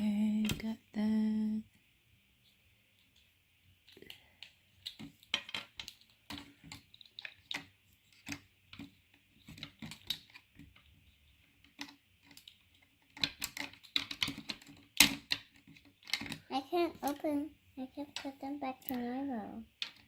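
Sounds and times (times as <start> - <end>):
plastic toy pieces clicking: 3.9 - 10.9, 11.5 - 17.2, 19.7 - 20.0.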